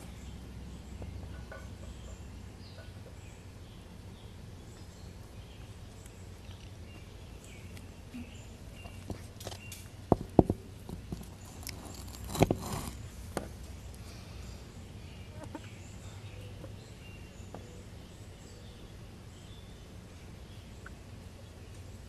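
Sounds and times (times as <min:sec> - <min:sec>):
sharp knocks of hard objects: 0:09.1 - 0:11.3.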